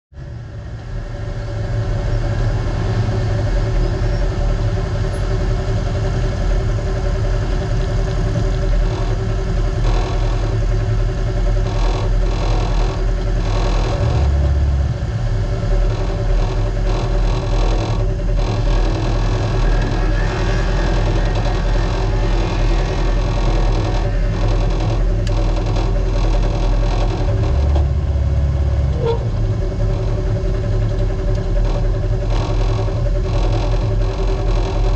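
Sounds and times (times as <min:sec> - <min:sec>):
off-road vehicle engine running: 0:00.2 - 0:34.9
chassis knocks and rattles: 0:07.4 - 0:34.9.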